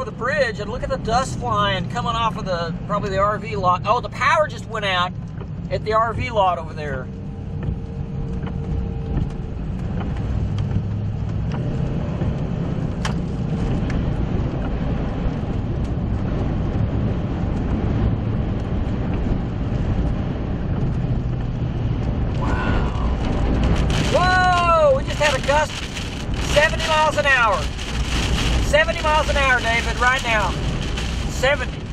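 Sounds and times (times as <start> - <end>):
vehicle low rumble: 0.0 - 31.9
storm wind gusts: 8.8 - 31.9.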